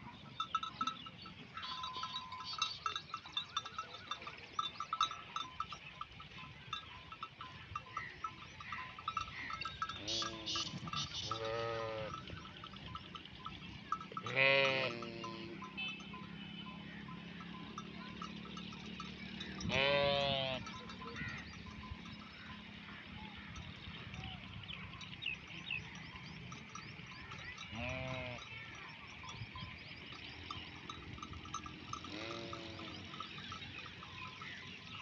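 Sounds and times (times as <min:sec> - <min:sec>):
neck bells clinking: 0:00.0 - 0:35.0
sheep bleating: 0:10.0 - 0:12.3, 0:14.2 - 0:16.0, 0:19.6 - 0:20.8, 0:27.7 - 0:28.4, 0:32.0 - 0:33.1.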